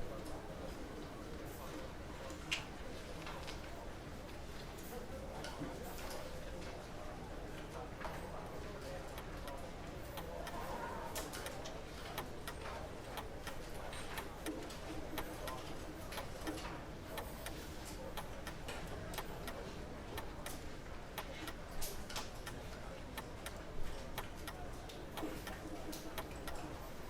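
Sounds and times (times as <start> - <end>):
sharp clicks and clinks: 9.2 - 26.7.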